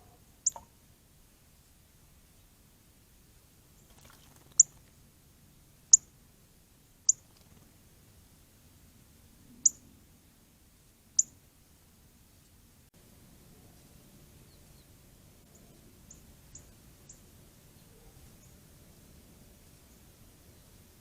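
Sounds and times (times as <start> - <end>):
bird chip calls: 0.4 - 0.7, 3.8 - 4.9, 7.1 - 7.6, 9.6 - 9.8.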